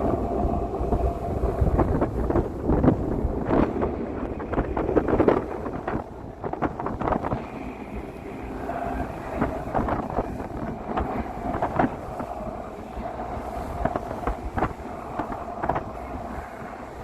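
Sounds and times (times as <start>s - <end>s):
boat engine droning: 0.0s - 17.0s
wind on microphone: 0.0s - 17.0s.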